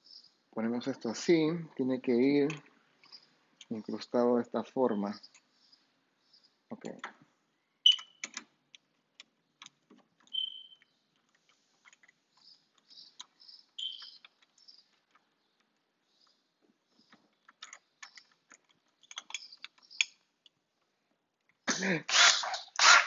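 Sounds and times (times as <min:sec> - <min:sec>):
lock parts clicking and clinking: 0:07.9 - 0:15.9, 0:17.1 - 0:20.6.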